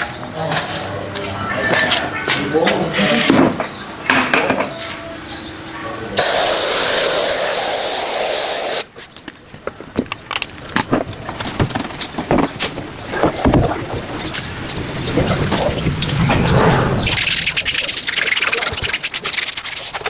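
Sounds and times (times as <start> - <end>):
pressure washer spray hissing: 6.2 - 8.9.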